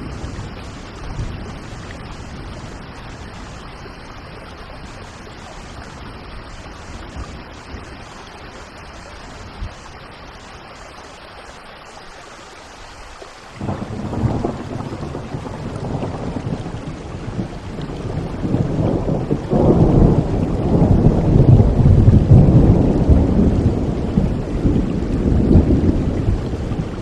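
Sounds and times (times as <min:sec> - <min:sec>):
thunder clap and rumble: 0:00.0 - 0:03.6, 0:13.6 - 0:27.0
steady rain: 0:00.0 - 0:27.0.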